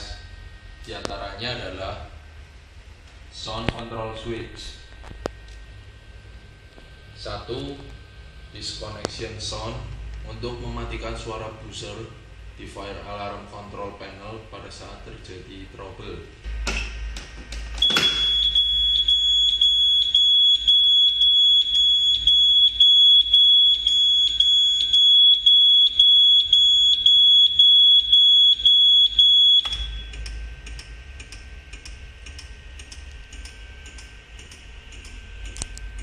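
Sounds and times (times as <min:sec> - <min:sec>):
alarm panel buzzer tone: 0:16.5 - 0:36.0.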